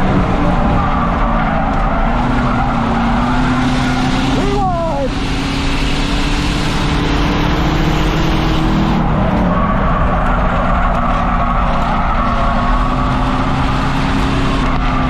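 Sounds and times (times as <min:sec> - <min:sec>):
race car engine running hard: 0:00.0 - 0:15.0.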